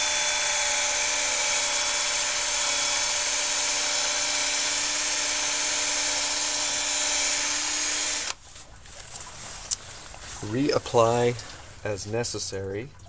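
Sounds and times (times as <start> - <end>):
cordless drill polishing plastic: 0.0 - 8.4.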